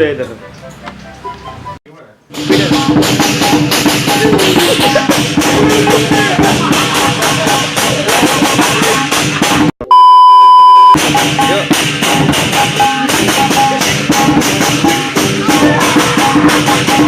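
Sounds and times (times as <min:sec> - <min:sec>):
music with steady beat: 0:00.6 - 0:09.8, 0:10.8 - 0:17.0
loud steady beep tone: 0:09.8 - 0:11.6.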